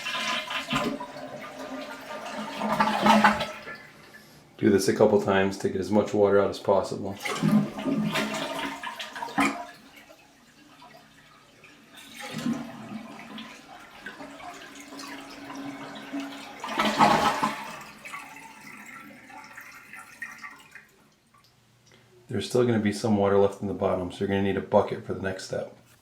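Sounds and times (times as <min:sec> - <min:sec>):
toilet flush water rushing: 0:00.0 - 0:04.3, 0:07.0 - 0:21.0.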